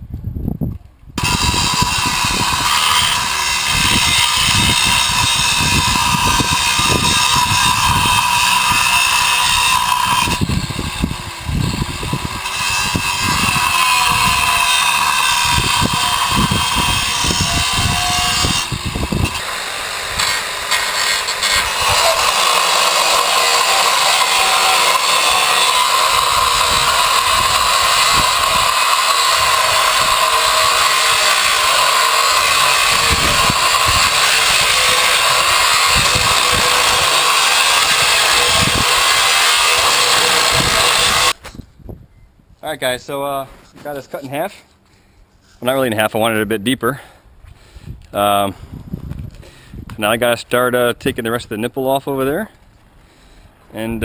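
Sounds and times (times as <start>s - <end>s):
power tool cutting steel: 1.2s - 41.4s.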